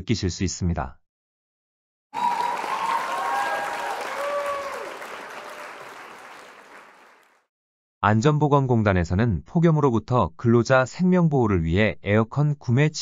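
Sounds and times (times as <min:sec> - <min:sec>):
crowd applause: 0:02.2 - 0:07.4
people cheering: 0:02.2 - 0:07.4.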